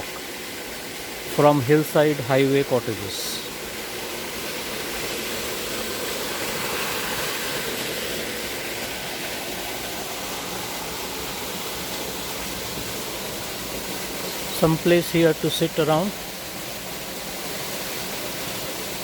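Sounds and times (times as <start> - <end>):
waterfall splashing into pool: 0.0 - 19.0.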